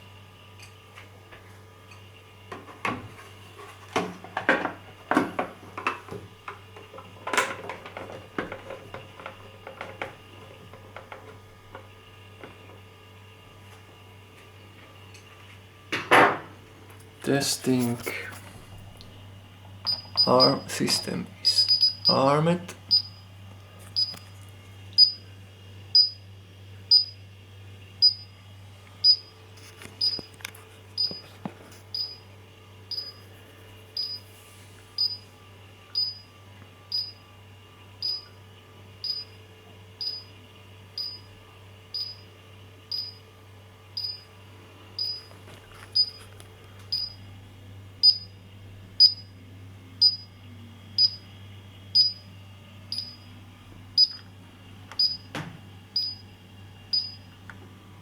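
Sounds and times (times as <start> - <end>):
steady low hum: 0.0 - 58.0
short high-pitched alarm beeps: 19.9 - 20.8, 21.4 - 22.2, 22.9 - 23.2, 25.0 - 25.2, 26.0 - 26.2, 48.0 - 48.3, 49.0 - 49.2, 50.0 - 50.3.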